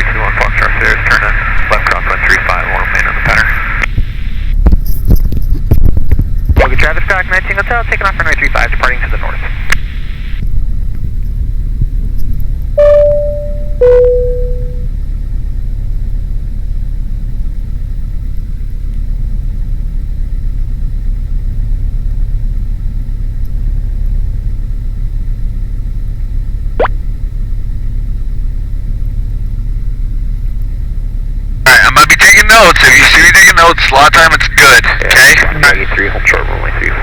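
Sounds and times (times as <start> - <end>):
aircraft piston engine rumble: 0.0 - 37.0
two short tones: 12.8 - 14.9.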